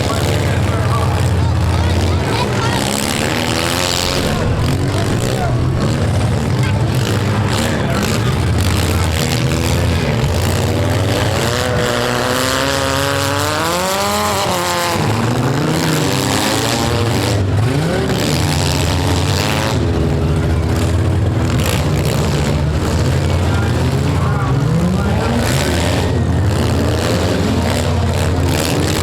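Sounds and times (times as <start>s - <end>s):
steady low drone: 0.0s - 12.3s
car engines revving: 0.0s - 29.0s.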